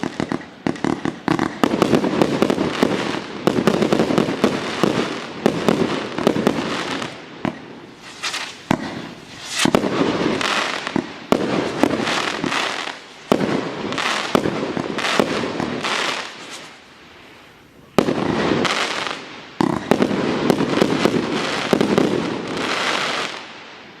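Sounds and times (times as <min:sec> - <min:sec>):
crackling firework bursts: 0:00.0 - 0:24.0
firework shot reports: 0:07.5 - 0:12.0.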